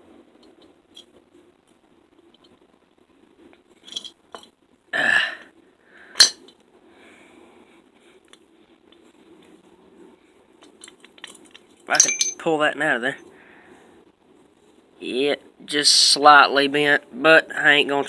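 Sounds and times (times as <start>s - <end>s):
metal engine parts clinking: 3.8s - 4.5s, 6.2s - 6.5s, 10.8s - 12.5s.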